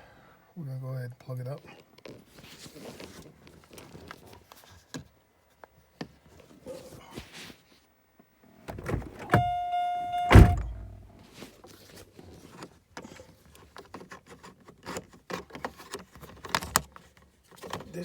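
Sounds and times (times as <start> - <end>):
small clicks and rustling: 1.8 - 6.6, 11.4 - 18.0
car door shutting: 8.7 - 11.1.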